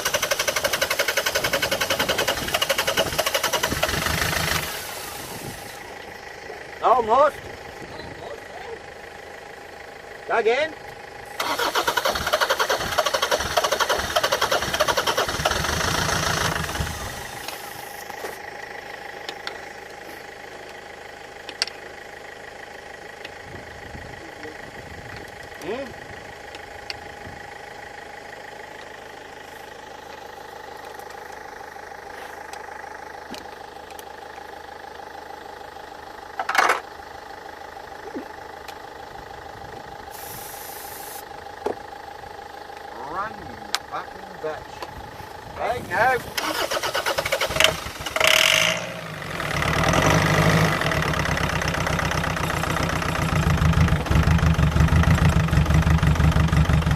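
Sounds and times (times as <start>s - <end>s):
diesel engine cranking on starter: 0.0s - 6.4s, 11.0s - 20.0s, 36.0s - 37.1s, 44.4s - 56.9s.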